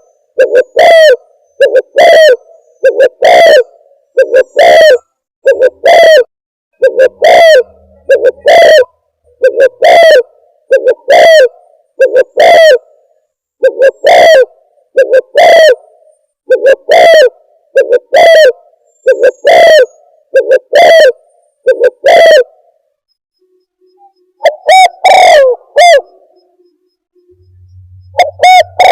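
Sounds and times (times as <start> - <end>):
dove cooing distorted: 0.0 - 22.7, 24.0 - 26.6, 27.3 - 28.9.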